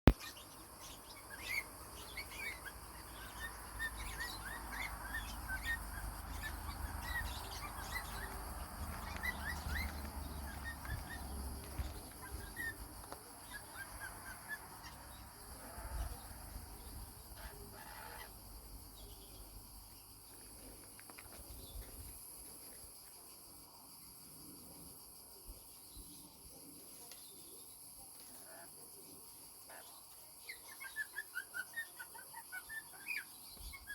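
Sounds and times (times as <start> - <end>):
bird chirping high calls: 0.1 - 18.4, 30.5 - 33.9.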